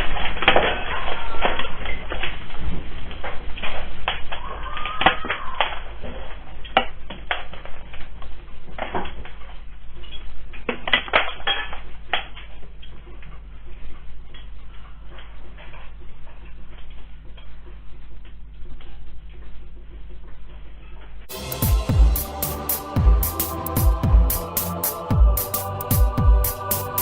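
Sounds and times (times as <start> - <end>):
low hum: 21.3 - 27.0.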